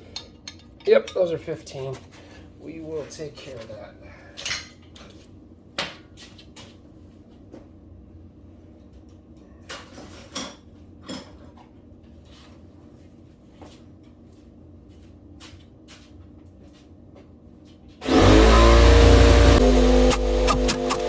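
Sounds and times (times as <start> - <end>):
electric air compressor running: 18.0 - 21.0.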